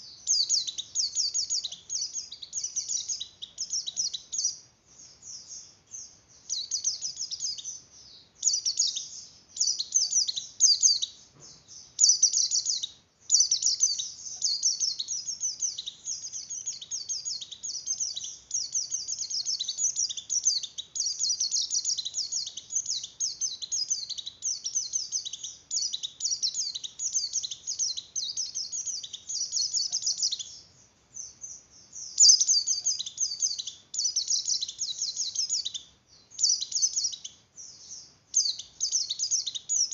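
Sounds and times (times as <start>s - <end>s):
bird twittering song: 0.0s - 39.9s.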